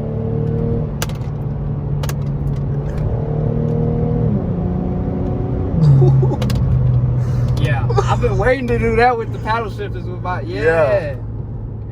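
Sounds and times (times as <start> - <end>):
car engine accelerating: 0.0 - 11.9.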